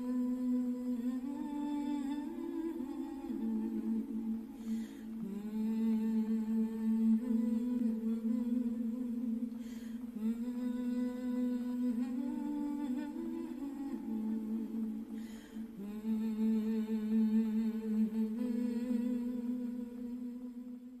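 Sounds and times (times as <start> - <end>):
person chanting hum-like tones: 0.0 - 21.0
intake of breath: 4.4 - 5.2, 9.5 - 10.2, 15.0 - 15.8.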